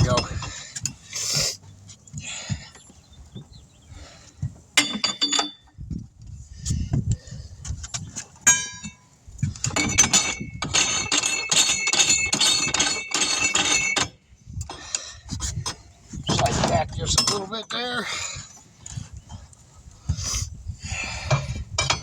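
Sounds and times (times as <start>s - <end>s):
steel tools clanking: 4.8s - 5.7s, 8.4s - 17.9s.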